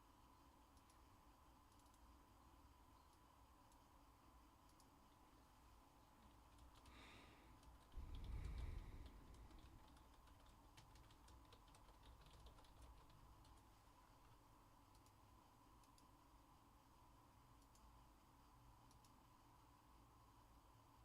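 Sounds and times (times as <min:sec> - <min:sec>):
keyboard typing: 0:06.1 - 0:15.2.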